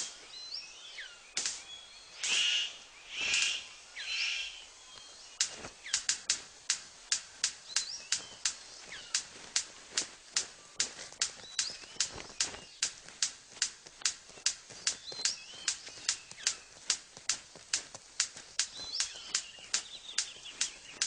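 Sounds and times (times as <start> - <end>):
thin bird chirps: 0.0 - 6.3, 7.6 - 9.4, 10.6 - 13.0, 14.3 - 16.9, 18.6 - 21.0
bird harsh hissing calls: 0.0 - 6.4, 18.6 - 21.0
bird sharp clicks: 0.0 - 21.0.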